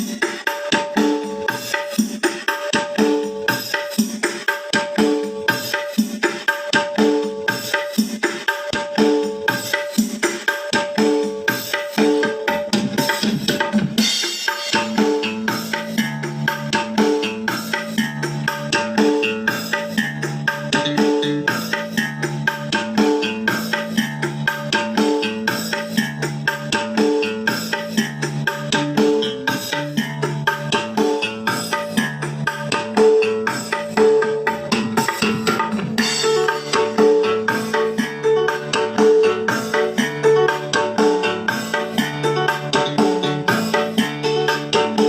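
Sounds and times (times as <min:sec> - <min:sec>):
percussion-led music: 0:00.0 - 0:45.0
bass line: 0:14.8 - 0:45.0.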